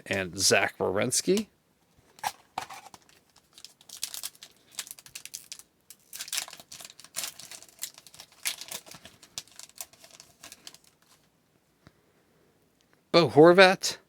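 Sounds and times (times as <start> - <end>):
wrapper tearing and crinkling: 2.2 - 11.2.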